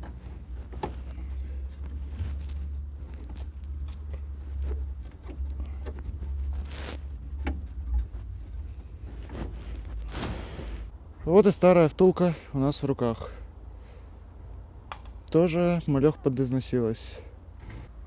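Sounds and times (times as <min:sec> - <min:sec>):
rustling scrapes: 0:00.1 - 0:10.9.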